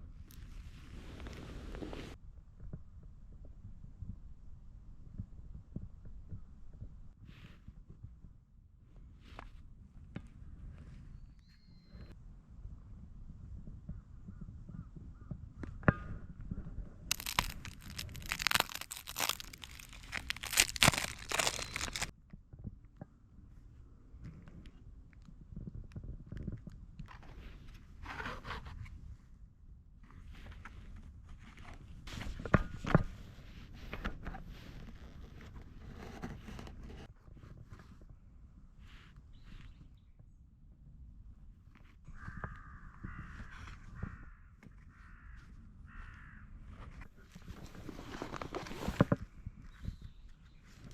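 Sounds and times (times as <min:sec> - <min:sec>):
twigs and leaves crunching: 0:17.1 - 0:22.1.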